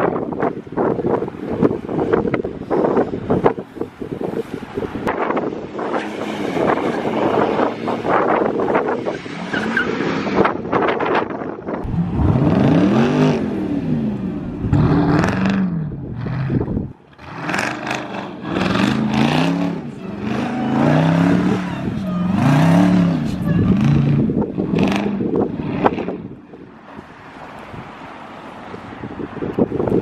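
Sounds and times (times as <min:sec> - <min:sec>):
car engine revving: 0:11.8 - 0:26.4.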